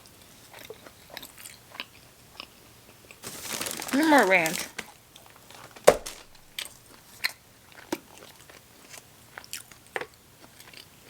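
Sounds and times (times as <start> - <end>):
person chewing chicken: 0.2 - 3.2, 4.8 - 11.0.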